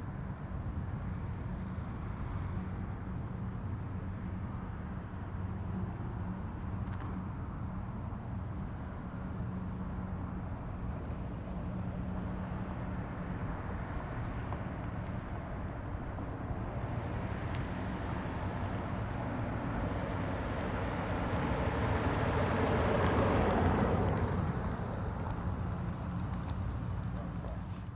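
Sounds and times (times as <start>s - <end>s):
distant highway traffic rumble: 2.1s - 27.9s
vehicle passing: 12.4s - 27.9s.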